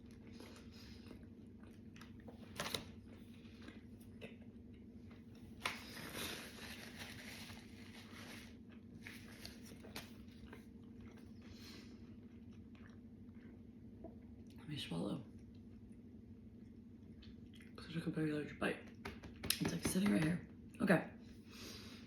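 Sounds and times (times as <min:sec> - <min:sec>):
person chewing crunchy food: 0:00.0 - 0:14.3
steady low hum: 0:00.0 - 0:22.0.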